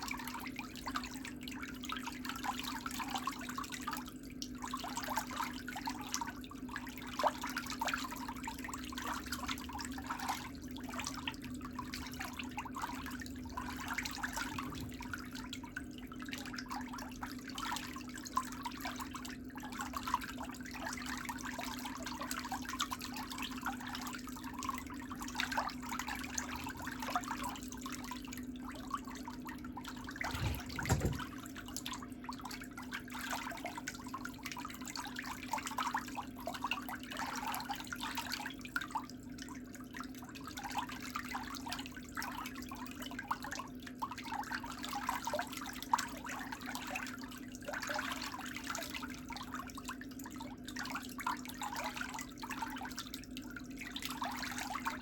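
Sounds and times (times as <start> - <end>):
water trickling and bubbling: 0.0 - 55.0
low thump: 30.3 - 31.4.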